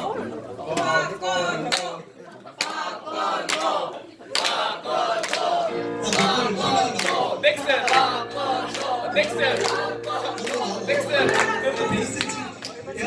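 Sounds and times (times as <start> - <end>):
voices singing together: 2.6 - 13.0.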